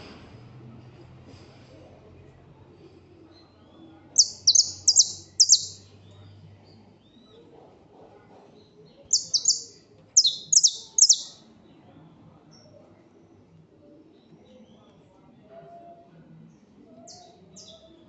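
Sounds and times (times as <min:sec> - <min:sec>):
songbird singing high sharp notes: 0:04.2 - 0:05.9, 0:09.1 - 0:11.4.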